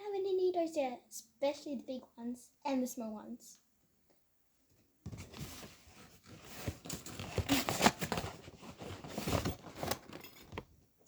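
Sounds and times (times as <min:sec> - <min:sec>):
plastic packaging crinkling: 0:06.5 - 0:10.2.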